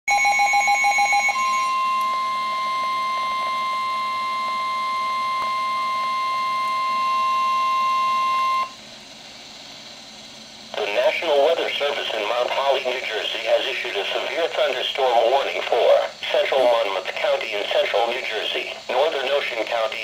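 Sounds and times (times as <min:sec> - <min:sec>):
steady high alert tone: 0:00.1 - 0:08.8
faint radio hiss: 0:09.6 - 0:20.0.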